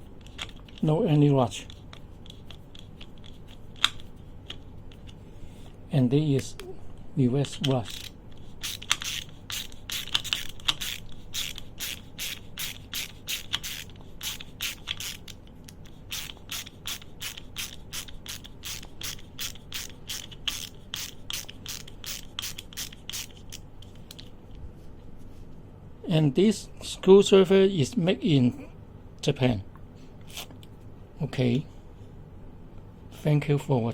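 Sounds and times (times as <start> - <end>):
ratchet screwdriver clicking: 7.5 - 24.2.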